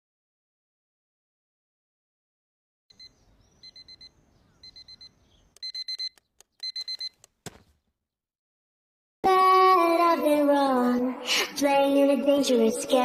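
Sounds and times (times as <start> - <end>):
electronic alarm beeping: 2.9 - 7.3.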